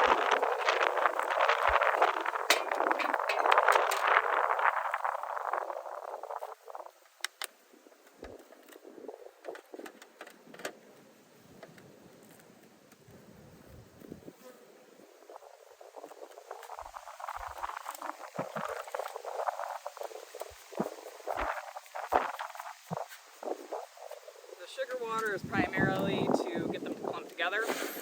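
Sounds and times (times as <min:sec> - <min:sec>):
honeybees buzzing: 0:00.0 - 0:06.8.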